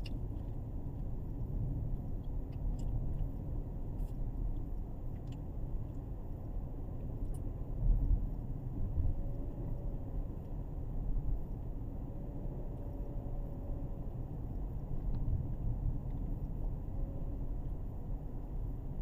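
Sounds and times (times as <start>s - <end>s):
faint light ticks: 0.0s - 1.2s, 2.1s - 6.1s, 14.9s - 16.6s
car engine rumbling: 0.0s - 19.0s.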